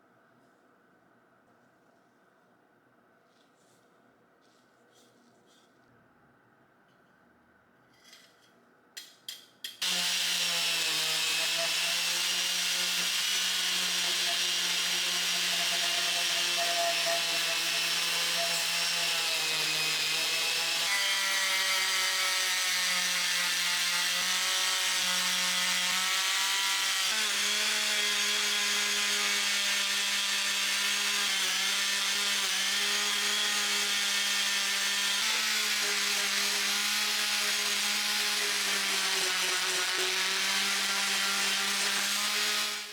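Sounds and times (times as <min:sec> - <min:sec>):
power tool motor running: 0:09.8 - 0:42.9.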